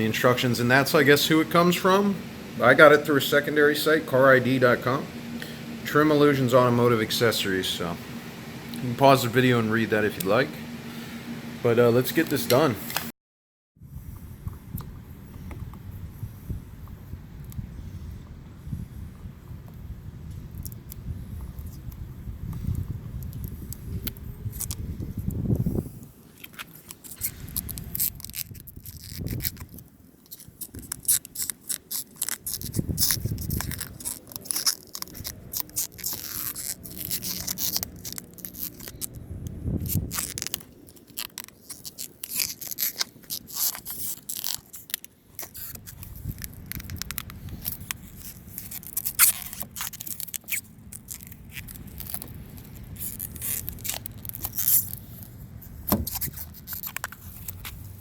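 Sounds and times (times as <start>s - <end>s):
scraping and rubbing: 25.5s - 58.0s
dull thumps: 55.8s - 56.5s.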